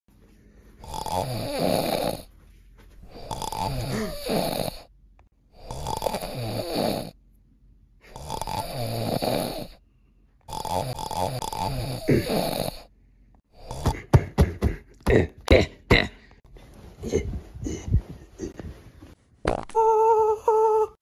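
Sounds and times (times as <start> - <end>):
person snoring loudly: 0.8 - 2.3, 3.1 - 4.9, 5.6 - 7.2, 8.1 - 9.8, 10.5 - 12.9, 13.5 - 16.2.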